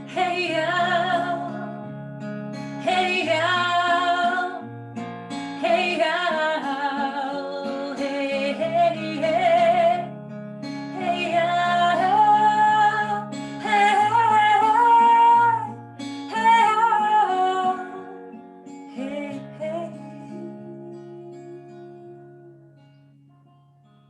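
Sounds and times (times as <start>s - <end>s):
woman singing wordless chant: 0.0s - 1.8s, 2.8s - 4.6s, 5.6s - 10.1s, 11.0s - 18.2s, 19.0s - 20.9s
strummed acoustic guitar: 0.0s - 24.0s.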